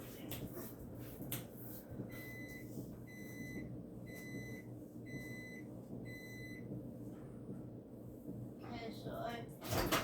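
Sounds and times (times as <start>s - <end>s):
microwave oven beeps: 2.0s - 6.8s.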